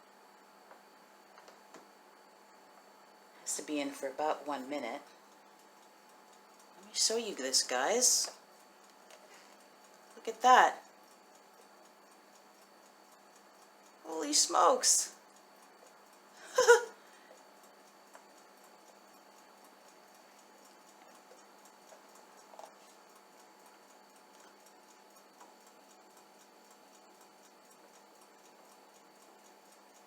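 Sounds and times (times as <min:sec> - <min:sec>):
faint steady hum: 0:00.0 - 0:30.0
soft ticks and taps: 0:08.2 - 0:10.2, 0:17.3 - 0:30.0.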